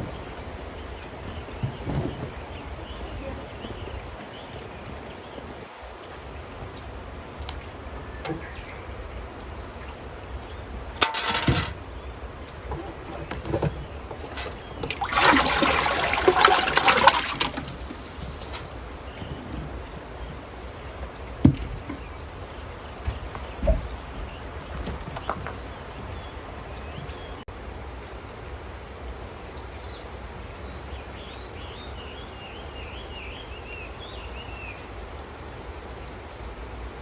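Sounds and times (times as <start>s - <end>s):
water splashing: 0.0s - 27.4s.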